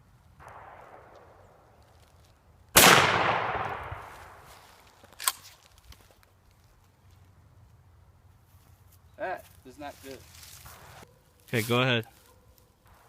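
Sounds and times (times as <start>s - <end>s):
soft blast: 0.4s - 1.7s, 2.8s - 4.6s
gunshot: 2.8s - 4.4s.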